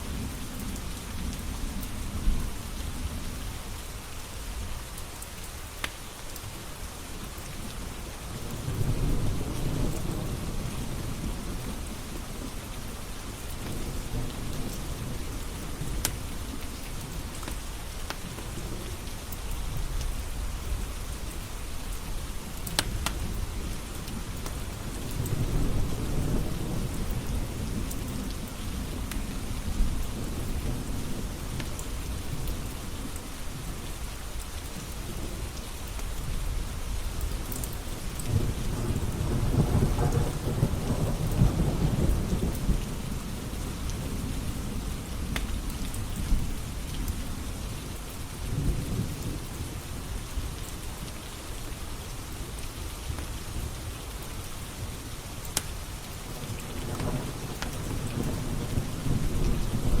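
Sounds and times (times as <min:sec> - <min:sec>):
steady rain: 0:00.0 - 1:00.0
low rolling thunder: 0:24.2 - 0:32.5, 0:37.3 - 0:47.6, 0:56.8 - 1:00.0.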